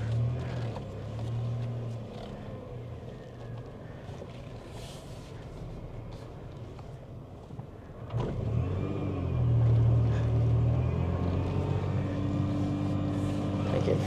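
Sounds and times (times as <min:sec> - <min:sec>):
truck engine revving: 0:08.1 - 0:14.0.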